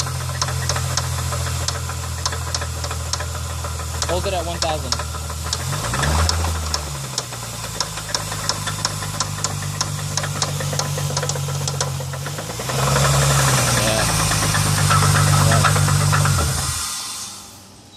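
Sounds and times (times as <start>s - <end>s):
engine knocking: 0.0s - 17.1s
car engine running: 0.0s - 17.8s.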